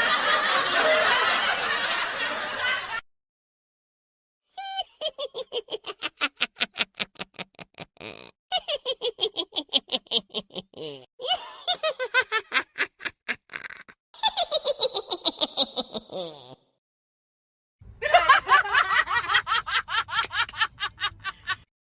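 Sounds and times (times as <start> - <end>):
high-pitched laughter: 4.6 - 16.7, 18.0 - 21.6.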